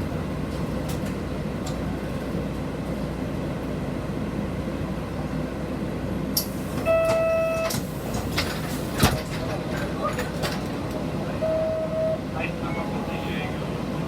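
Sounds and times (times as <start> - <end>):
bus engine and road rumble: 0.0 - 14.0
short electronic beep: 6.9 - 7.8, 11.4 - 12.2.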